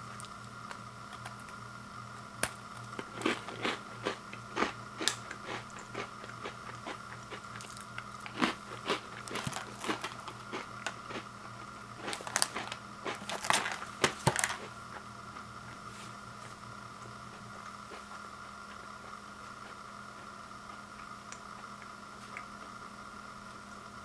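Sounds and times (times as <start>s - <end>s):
steady faint hum: 0.0s - 24.0s
biscuit crunching: 2.4s - 15.9s.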